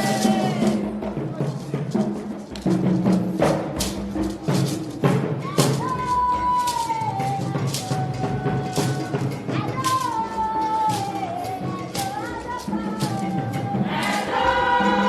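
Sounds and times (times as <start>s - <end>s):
drums and percussion: 0.0s - 15.0s.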